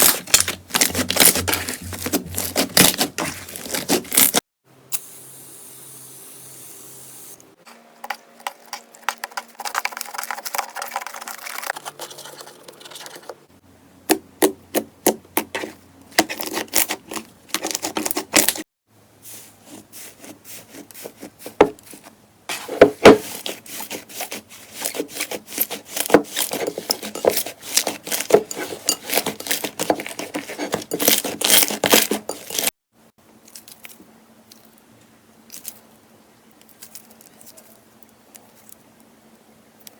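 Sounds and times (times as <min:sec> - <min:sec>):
slime crackling and squelching: 0:00.0 - 0:04.4.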